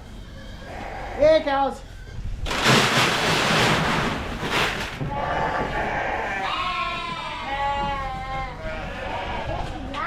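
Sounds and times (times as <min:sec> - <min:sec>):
sheep bleating: 0:00.6 - 0:01.4, 0:05.1 - 0:09.7.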